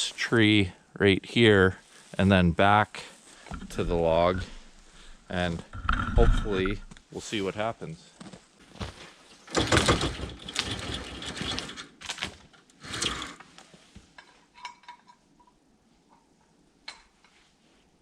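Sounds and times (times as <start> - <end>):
scuffing and rustling: 8.1 - 9.4.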